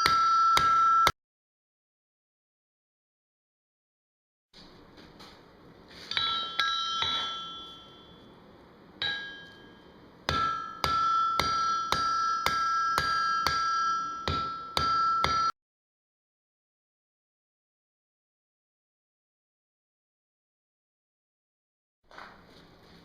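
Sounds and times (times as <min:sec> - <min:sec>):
anvil ringing: 0:00.0 - 0:01.2, 0:06.1 - 0:08.4, 0:09.0 - 0:15.6
hammer striking steel on anvil: 0:00.0 - 0:01.2, 0:06.1 - 0:08.3, 0:09.0 - 0:15.6.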